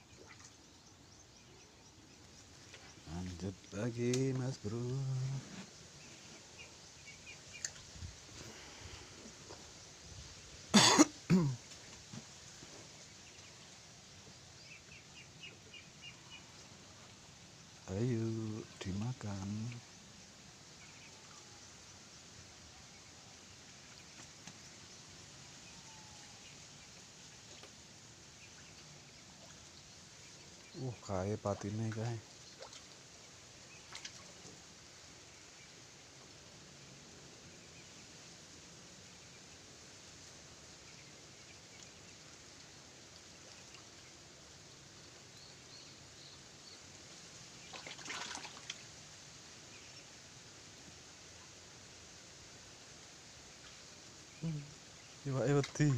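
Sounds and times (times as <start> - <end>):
faint outdoor hiss: 0.0 - 55.9
faint ticks: 2.6 - 5.4, 7.5 - 8.0
water splashing: 47.6 - 48.9.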